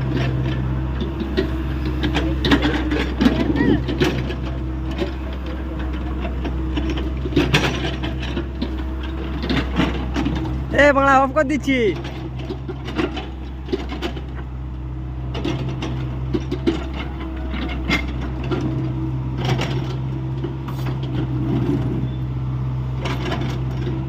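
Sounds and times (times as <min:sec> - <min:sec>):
excavator diesel engine running: 0:00.0 - 0:24.0
metallic clanks and knocks: 0:00.1 - 0:10.7, 0:11.9 - 0:14.5.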